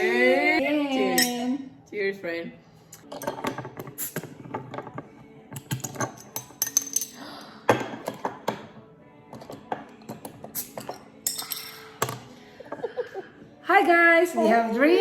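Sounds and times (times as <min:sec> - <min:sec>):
background music: 0:00.0 - 0:15.0
glasses clinking in toasts: 0:01.0 - 0:01.5.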